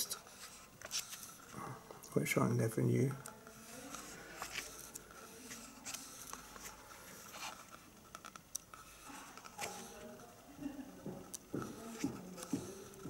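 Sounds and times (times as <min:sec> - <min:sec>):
book pages turning: 0:00.3 - 0:01.6, 0:03.6 - 0:10.0
small clicks and ticks: 0:07.7 - 0:10.0.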